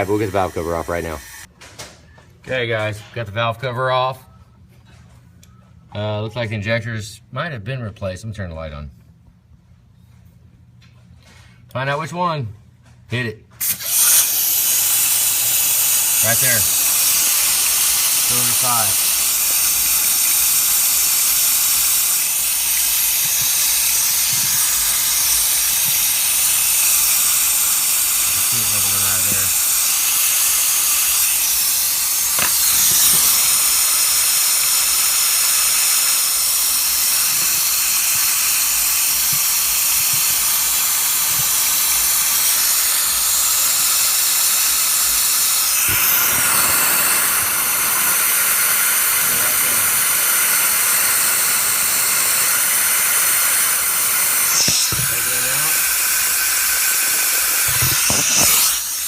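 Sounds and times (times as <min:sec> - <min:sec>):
compressed air hissing: 0:13.6 - 0:59.0.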